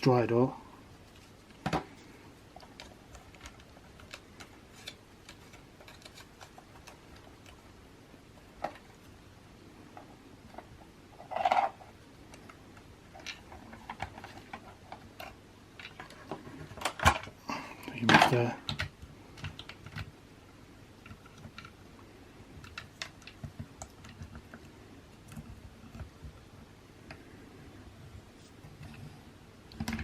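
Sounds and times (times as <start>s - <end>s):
plastic parts clicking: 1.2s - 7.6s, 10.0s - 20.1s, 22.6s - 24.7s, 29.7s - 30.0s.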